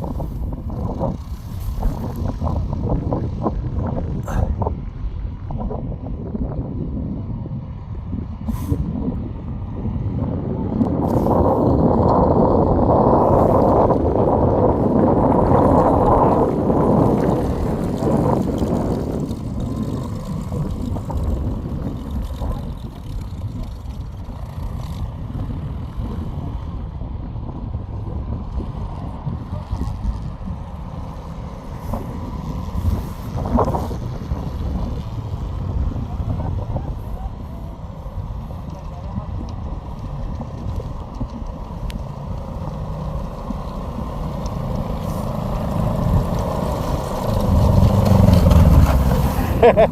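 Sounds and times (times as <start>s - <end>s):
snowmobile engine rumble: 0.0s - 49.9s.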